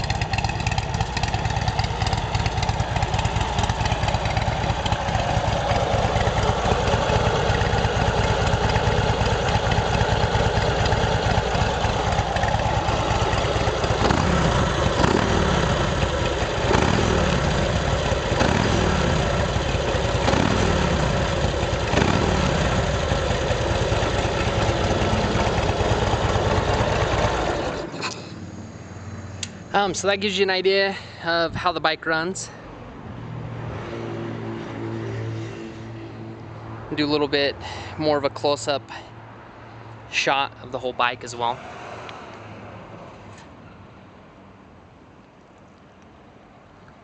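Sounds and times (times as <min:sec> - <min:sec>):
motorcycle engine revving: 0:00.0 - 0:30.0
motorcycle engine idling: 0:00.0 - 0:30.3.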